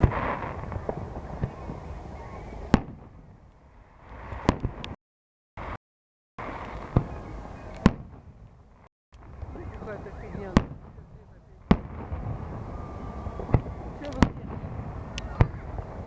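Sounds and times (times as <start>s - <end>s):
firework bangs: 0.0s - 5.0s, 6.4s - 16.0s
noisy rumble: 6.4s - 16.0s.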